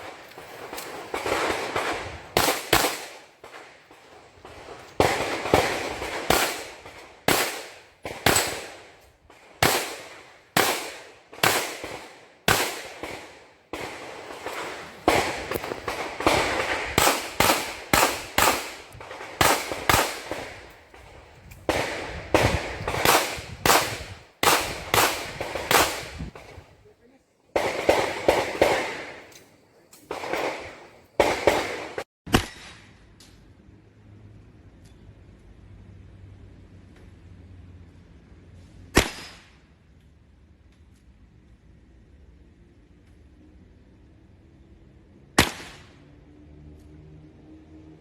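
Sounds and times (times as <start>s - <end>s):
echoing pistol shots: 0.0s - 3.6s, 5.0s - 9.0s, 9.6s - 20.7s, 21.7s - 26.4s, 30.1s - 32.6s.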